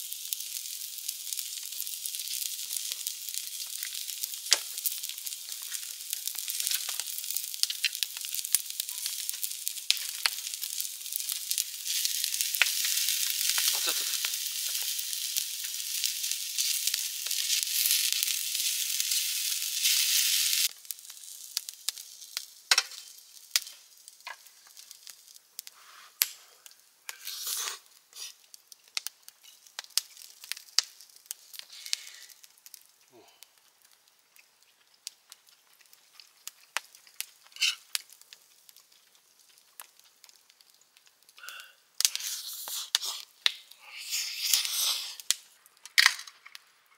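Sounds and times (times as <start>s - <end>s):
food sizzling in a pan: 0.0s - 46.9s
pops and crackles: 0.0s - 46.9s.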